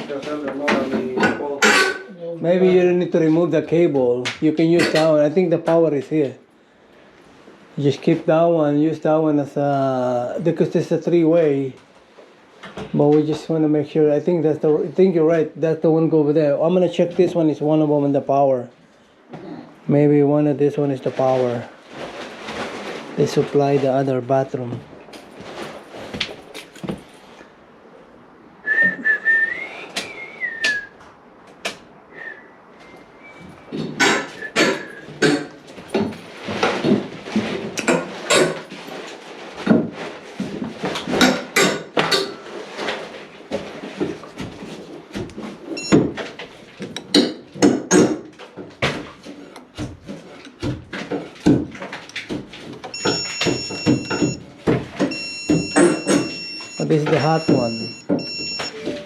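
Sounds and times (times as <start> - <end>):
person whistling: 28.7 - 31.0, 32.1 - 33.5
electrical tester beeping: 45.8 - 46.2, 52.9 - 54.4, 55.0 - 59.0
tools clattering: 50.4 - 59.0.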